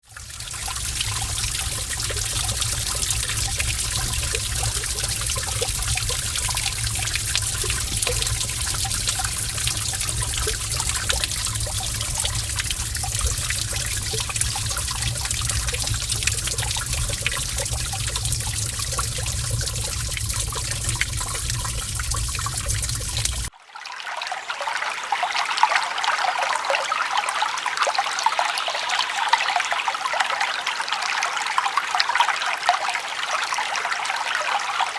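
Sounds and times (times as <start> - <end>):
water trickling: 0.0 - 34.9
stream rushing with low rumble: 0.1 - 23.5.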